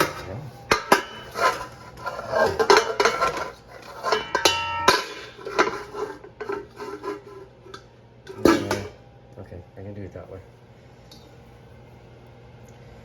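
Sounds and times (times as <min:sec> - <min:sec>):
metal spoon scraping a pot: 0:00.0 - 0:09.0
ringing clang: 0:04.1 - 0:05.4.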